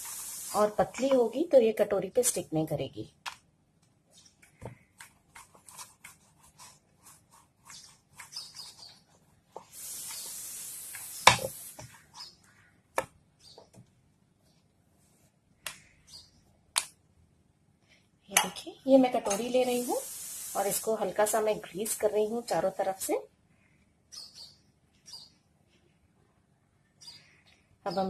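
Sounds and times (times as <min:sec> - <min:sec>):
hiss: 0:00.0 - 0:01.1, 0:09.6 - 0:11.9, 0:19.3 - 0:23.0.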